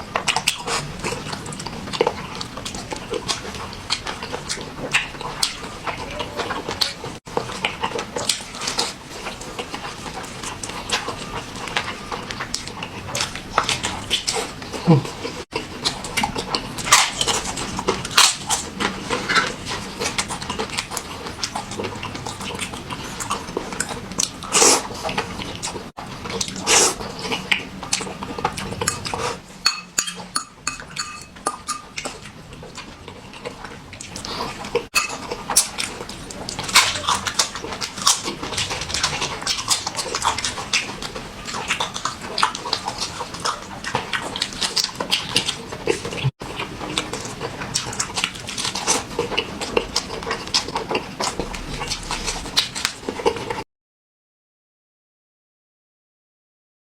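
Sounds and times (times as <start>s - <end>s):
wet chewing and slurping: 0.0s - 53.6s.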